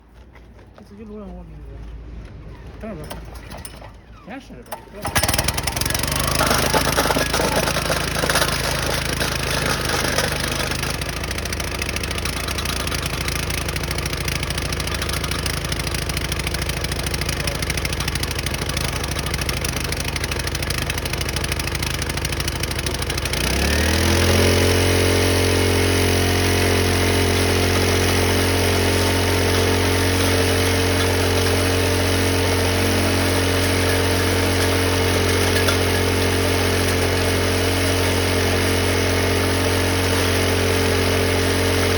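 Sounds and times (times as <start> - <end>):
drilling rig engine running: 3.0 - 41.9.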